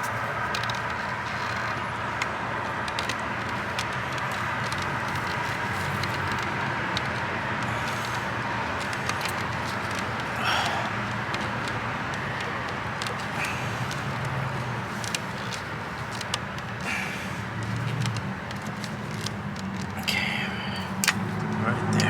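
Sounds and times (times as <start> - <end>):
background hum and hiss: 0.0 - 22.0
pliers clicking on hose clamp: 20.8 - 22.0.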